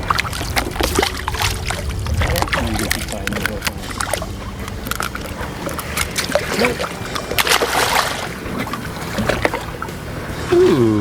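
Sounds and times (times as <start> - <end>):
boat engine humming: 0.0 - 11.0.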